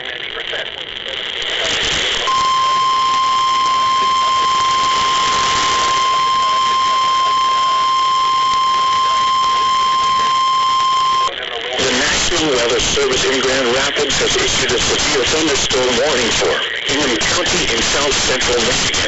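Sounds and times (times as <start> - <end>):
radio static: 0.0 - 19.0
steady warning beep: 2.3 - 16.4.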